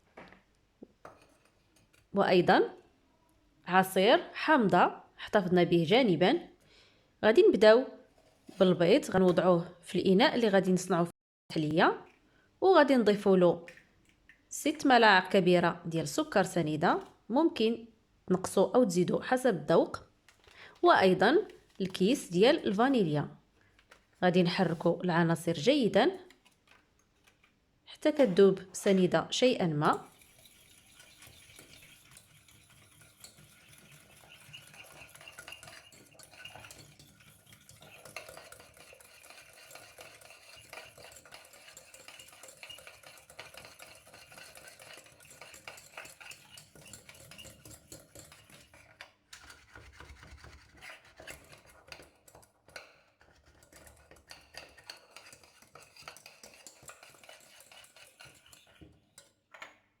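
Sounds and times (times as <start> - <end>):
utensil stirring in a bowl: 1.0 - 2.2, 20.3 - 59.4.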